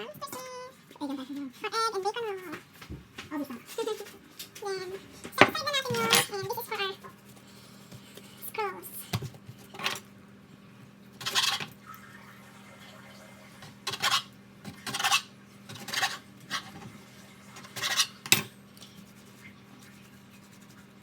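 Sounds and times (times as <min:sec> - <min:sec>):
utensils scraping dough on surface: 0:11.2 - 0:11.7, 0:13.8 - 0:16.9, 0:17.6 - 0:18.4.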